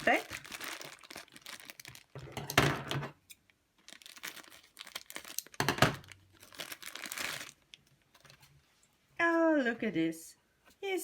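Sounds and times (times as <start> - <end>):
plastic wrapper crinkling and tearing: 0.0 - 2.6, 3.3 - 8.5.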